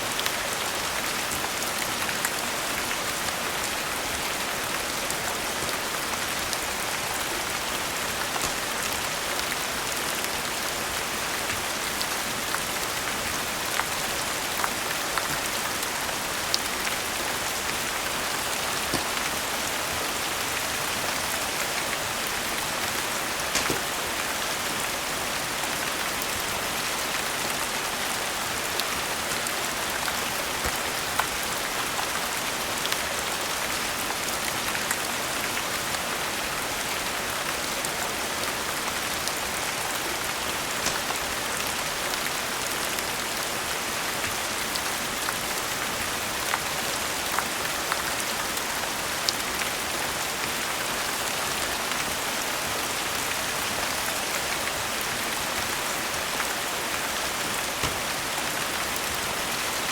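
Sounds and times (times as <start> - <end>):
steady rain falling: 0.0 - 59.9
sharp clicks: 23.5 - 24.0.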